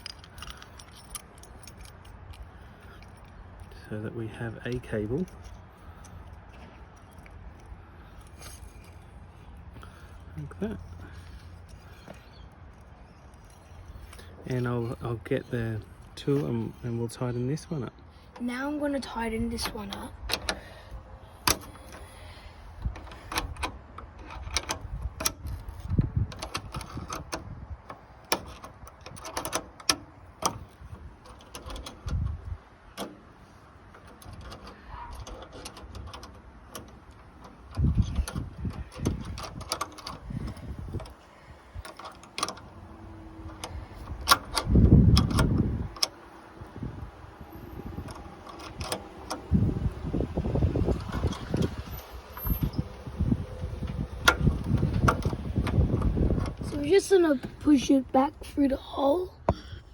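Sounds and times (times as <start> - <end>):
metal tool clinking on nut: 0.0 - 3.8.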